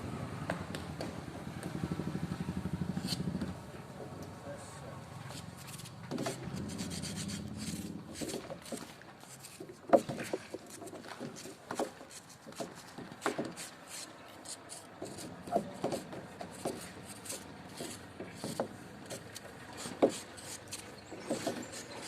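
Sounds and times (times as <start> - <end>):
rubbing or scraping: 3.0 - 3.4, 5.2 - 22.0.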